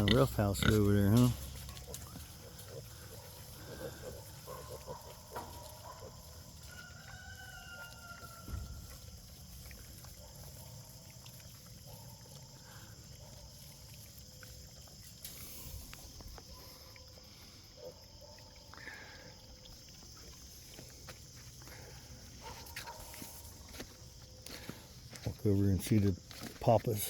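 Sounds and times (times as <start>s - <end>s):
pig grunts: 0.0s - 5.1s
rooster crowing faintly: 6.7s - 8.7s.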